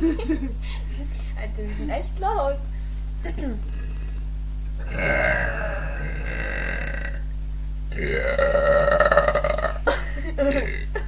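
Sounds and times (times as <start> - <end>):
girl burping: 4.8 - 7.2, 8.0 - 11.0.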